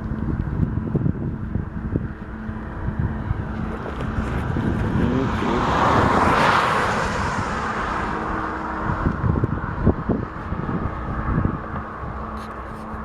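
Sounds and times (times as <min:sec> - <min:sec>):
steady low rumble: 0:00.0 - 0:13.0
vehicle passing by: 0:01.0 - 0:13.0.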